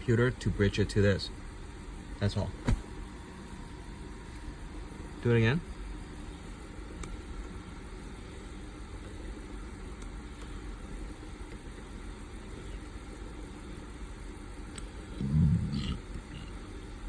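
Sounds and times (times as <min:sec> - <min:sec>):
low background hum: 0:00.0 - 0:17.0.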